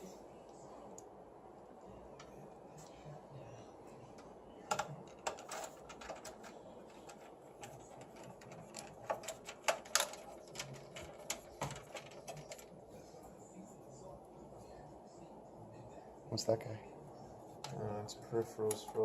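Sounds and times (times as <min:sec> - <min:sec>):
metal parts clicking and tapping: 0:04.7 - 0:12.7.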